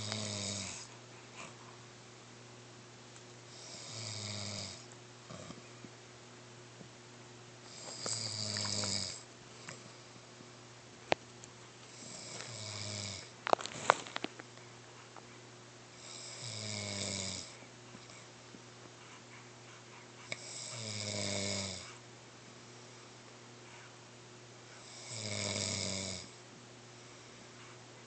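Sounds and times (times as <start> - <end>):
person snoring: 0.0 - 1.5, 3.5 - 5.6, 7.7 - 9.2, 11.9 - 13.3, 16.0 - 17.6, 20.3 - 21.9, 24.8 - 26.4.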